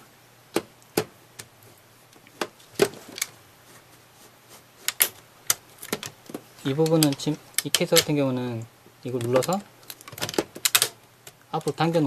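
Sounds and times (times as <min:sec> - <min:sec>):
plastic and metal clicks and knocks: 0:09.1 - 0:11.8.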